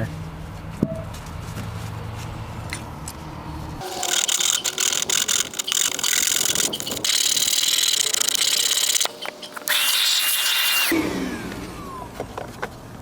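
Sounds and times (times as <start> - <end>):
tool scraping and rasping: 3.8 - 11.0
steady whine: 3.8 - 12.2.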